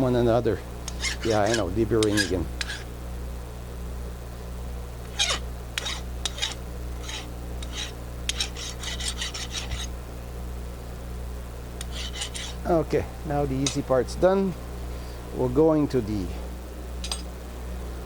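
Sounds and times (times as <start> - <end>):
steady low hum: 0.0 - 18.0
deburring tool scraping metal: 0.8 - 2.9, 5.1 - 9.9, 11.8 - 12.6.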